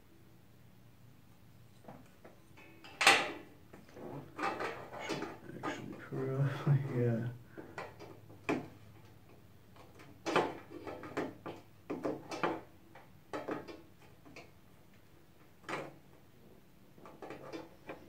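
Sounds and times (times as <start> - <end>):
computer case parts knocking and scraping: 10.0 - 12.7.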